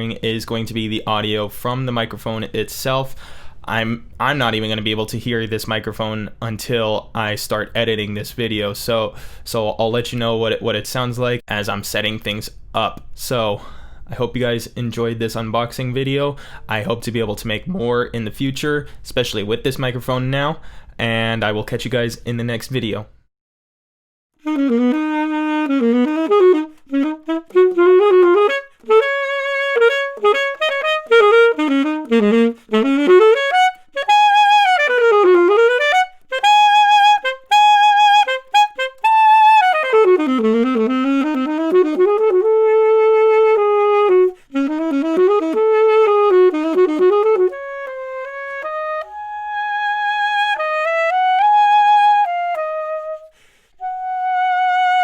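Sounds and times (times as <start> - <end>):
solo saxophone jazz melody: 24.4 - 55.0.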